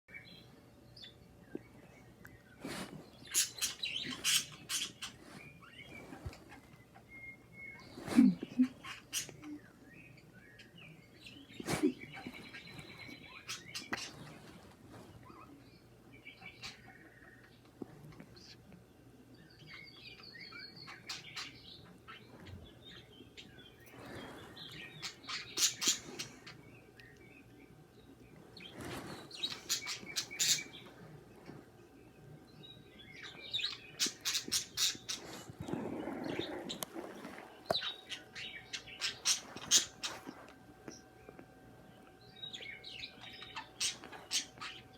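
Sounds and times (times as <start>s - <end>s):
pet birds chirping: 0.1s - 44.9s
soft rustle: 2.6s - 3.2s, 4.0s - 6.8s, 11.6s - 15.5s, 28.5s - 30.2s, 35.2s - 38.0s, 39.3s - 41.0s.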